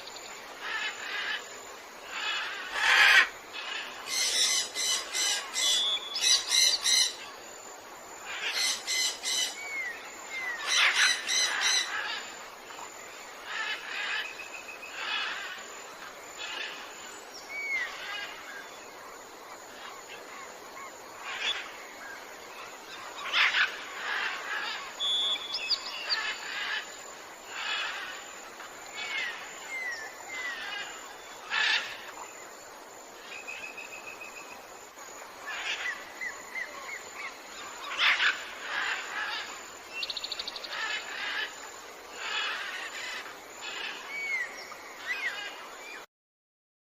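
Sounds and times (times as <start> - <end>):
steady background hiss: 0.0 - 46.1
songbirds chirping and singing: 19.8 - 32.2.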